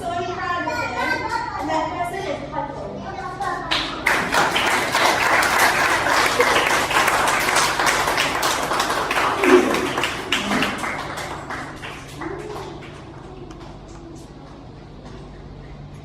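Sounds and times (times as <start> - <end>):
children applauding: 3.7 - 13.9.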